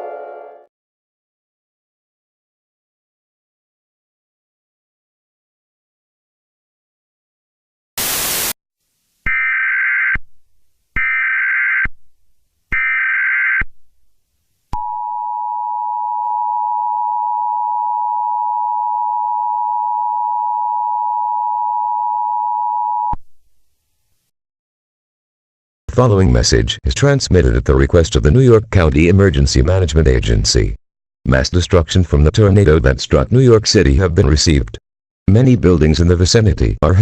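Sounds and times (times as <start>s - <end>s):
noise burst: 8.0s - 8.6s.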